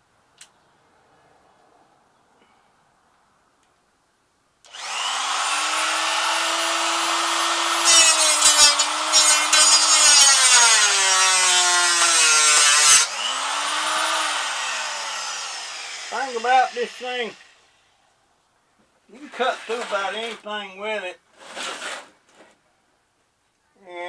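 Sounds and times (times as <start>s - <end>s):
abrasive wheel cutting metal: 4.7s - 17.6s
cut-off tool whining: 4.7s - 17.7s.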